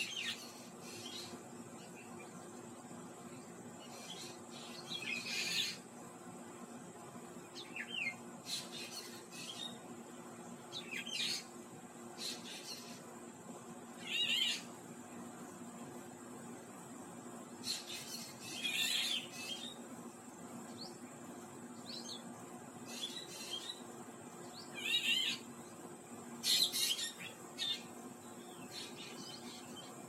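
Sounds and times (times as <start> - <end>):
bird chirping and rasping calls: 24.7 - 25.5.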